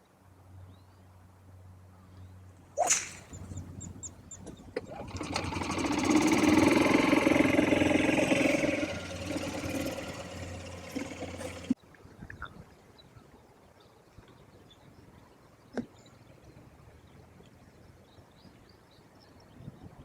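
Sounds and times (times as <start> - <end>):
sharp crack: 2.8 - 4.0
vehicle engine passing by: 2.8 - 11.8.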